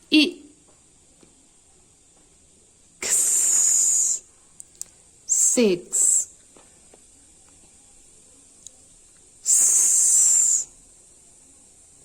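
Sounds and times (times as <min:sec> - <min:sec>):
person hissing s sound: 0:03.0 - 0:04.3, 0:05.3 - 0:06.3, 0:09.4 - 0:10.8.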